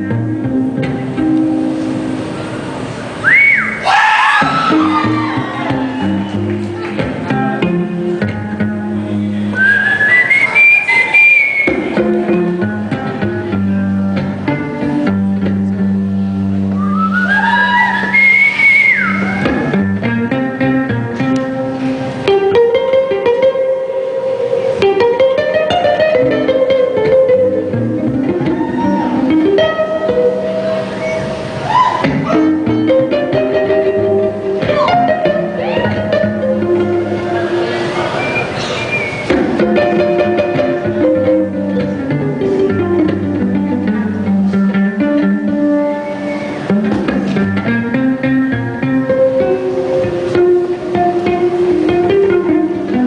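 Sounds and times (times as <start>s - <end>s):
plucked string notes: 0.0s - 3.2s, 4.4s - 53.0s
held low bass notes: 11.7s - 17.4s.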